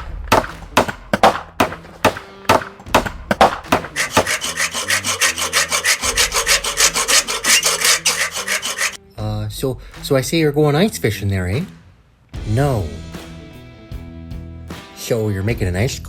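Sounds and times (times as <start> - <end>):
saw rasping through ice: 3.7 - 9.0.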